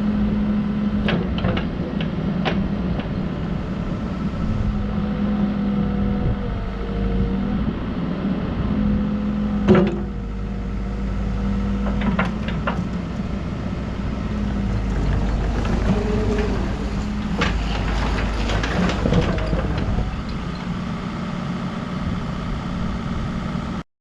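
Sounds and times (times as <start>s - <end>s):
diesel engine running: 0.0s - 23.8s.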